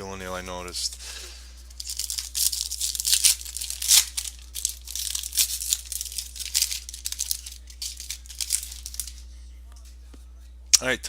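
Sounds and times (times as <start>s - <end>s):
card pack wrapper tearing: 1.7s - 9.2s.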